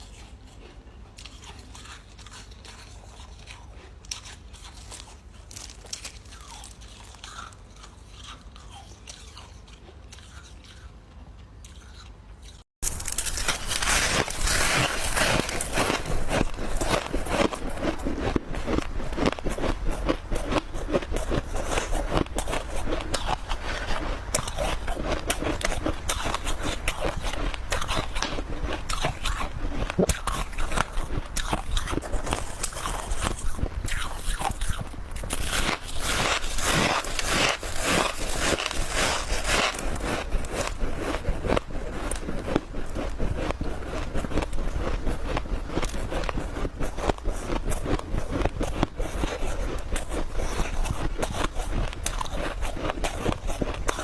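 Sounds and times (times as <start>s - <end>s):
chewing ice crunching: 0.0s - 54.0s.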